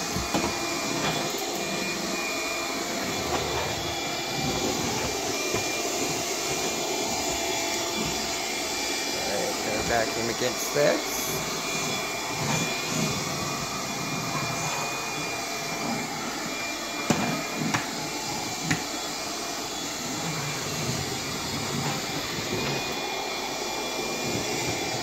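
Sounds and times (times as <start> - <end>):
stick vacuum running: 0.0 - 25.0.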